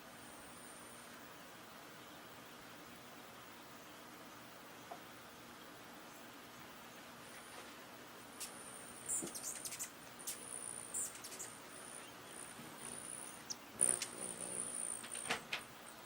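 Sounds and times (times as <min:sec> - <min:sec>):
small birds calling high-pitched: 0:08.4 - 0:15.3.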